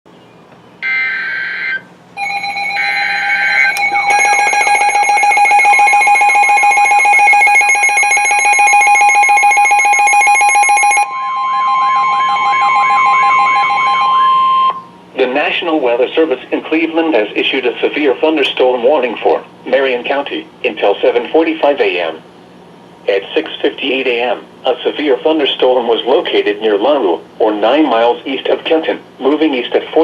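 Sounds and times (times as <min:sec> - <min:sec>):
buzzing data bursts: 0:00.8 - 0:14.8
fast warbling tone: 0:00.8 - 0:14.9
steady alert tones: 0:00.8 - 0:14.9.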